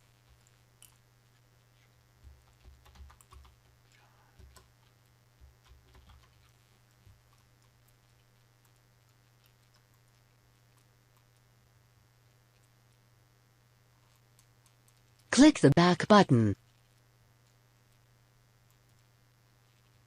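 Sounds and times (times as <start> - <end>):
typing on a keyboard: 2.2 - 10.2.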